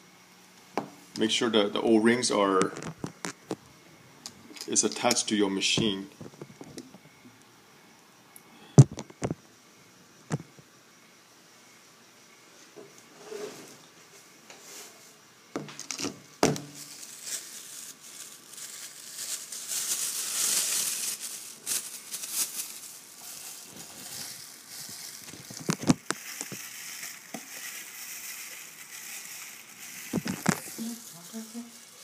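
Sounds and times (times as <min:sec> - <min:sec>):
crinkly rustling: 0:15.8 - 0:32.0.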